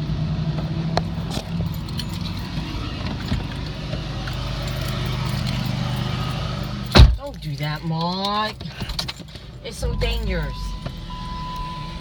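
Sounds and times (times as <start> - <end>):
car engine running: 0.0 - 12.0
keys jingling and clicking: 1.2 - 9.6.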